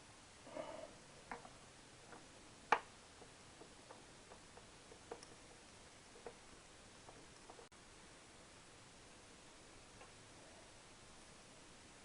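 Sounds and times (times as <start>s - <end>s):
small parts clicking and tapping: 1.2s - 7.7s.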